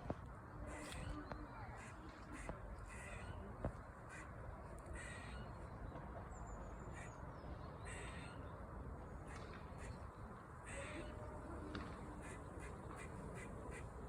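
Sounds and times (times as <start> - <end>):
squirrel calling: 7.8 - 8.5.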